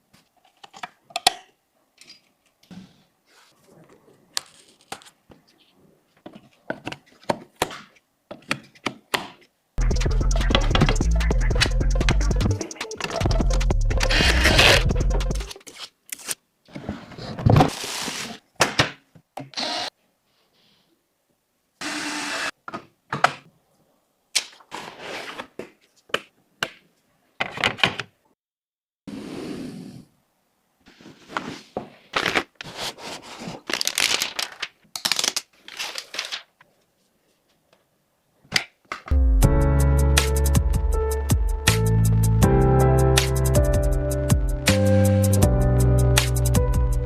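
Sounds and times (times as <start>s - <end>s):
loud music with drum beat: 9.8s - 15.5s, 39.2s - 47.0s.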